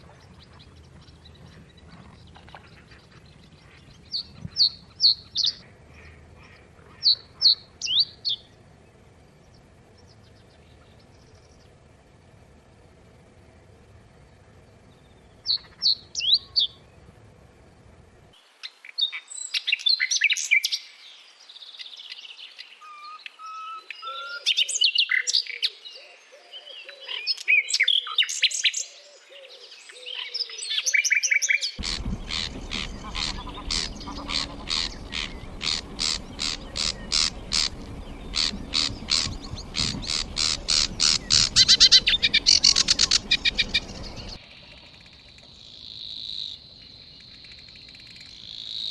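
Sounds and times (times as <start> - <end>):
fast repeated bird chirps: 0.0 - 8.5, 31.8 - 48.9
songbirds singing and chirping: 0.0 - 48.9.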